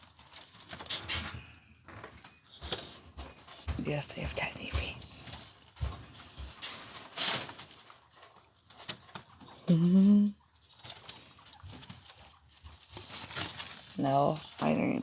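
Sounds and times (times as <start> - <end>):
rustling and scratching in dust: 0.0 - 9.7, 10.3 - 15.0
woman cooing: 9.7 - 10.4.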